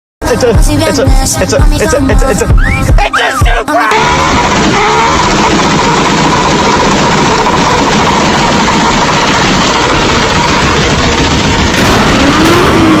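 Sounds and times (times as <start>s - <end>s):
car engine idling: 4.0s - 13.0s.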